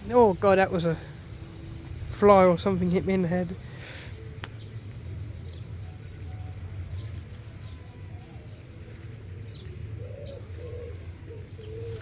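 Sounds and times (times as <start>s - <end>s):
small birds chirping: 0.0s - 12.0s
steady low rumble: 0.0s - 12.0s
pigeon cooing: 8.0s - 12.0s.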